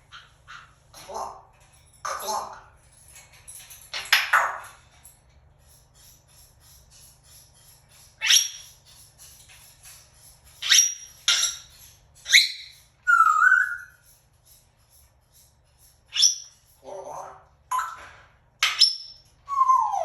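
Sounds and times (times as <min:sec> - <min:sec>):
parrot high calls: 0:10.6 - 0:14.0, 0:16.1 - 0:20.0
parrot warbling whistle: 0:12.3 - 0:14.0, 0:19.5 - 0:20.0.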